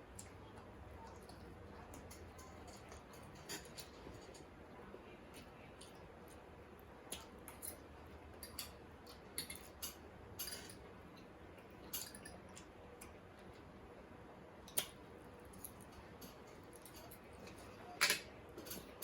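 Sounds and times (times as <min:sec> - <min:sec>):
eating clicks and smacks: 0:14.6 - 0:15.0.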